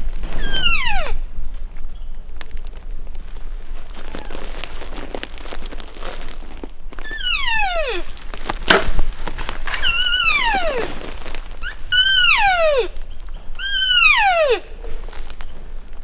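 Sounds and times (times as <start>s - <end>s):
elk calls: 7.0s - 8.3s, 9.6s - 15.7s.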